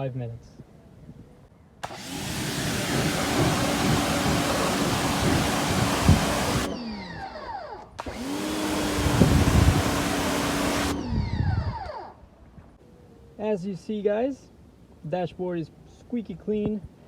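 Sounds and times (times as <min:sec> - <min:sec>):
water jet hissing: 0:01.8 - 0:06.8, 0:08.0 - 0:11.0
pressure washer motor whine: 0:01.8 - 0:12.2.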